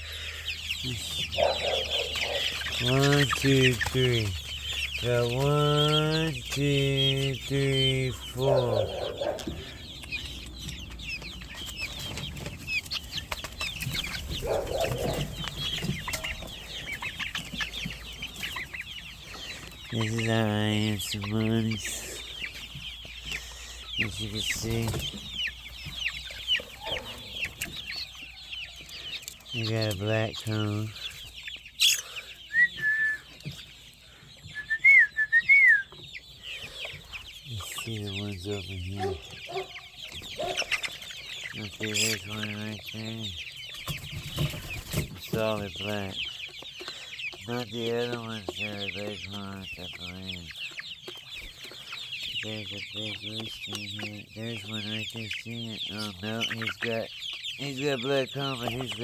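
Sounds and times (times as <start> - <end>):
chickens chirping: 0.0 - 59.0
chickens clucking: 0.0 - 59.0
person whistling: 32.5 - 33.3, 34.5 - 35.9.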